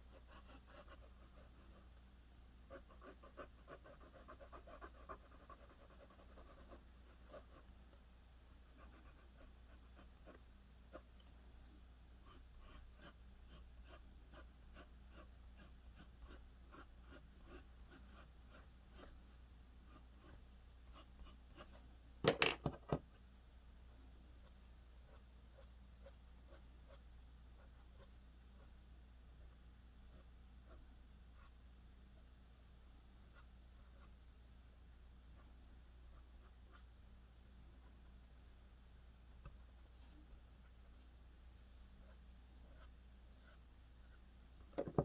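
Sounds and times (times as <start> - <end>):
pencil scratching on paper: 0.1 - 1.9, 2.7 - 7.6, 8.8 - 11.0, 12.2 - 19.2, 42.0 - 44.2.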